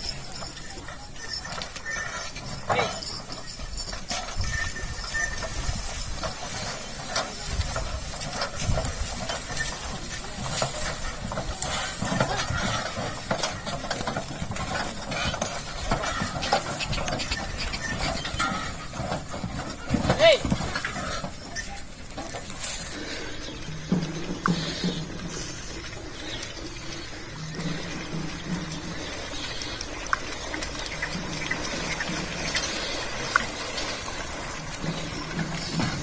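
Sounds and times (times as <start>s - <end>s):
cart knocks and clatters: 0.0s - 36.0s
cart rumbling: 0.0s - 36.0s.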